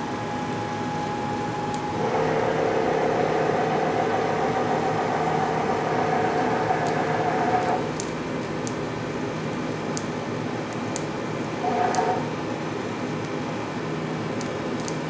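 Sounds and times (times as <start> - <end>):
machine hum: 0.0 - 9.3, 11.2 - 12.6.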